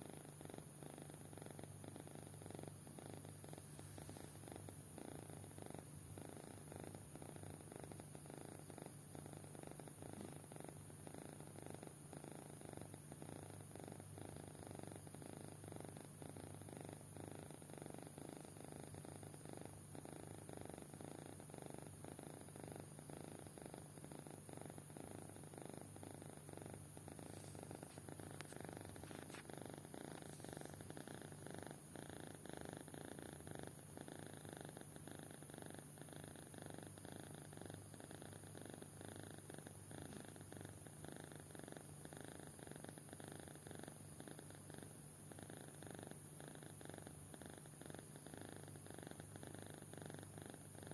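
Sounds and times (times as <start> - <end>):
kitten snoring: 0.0 - 50.9.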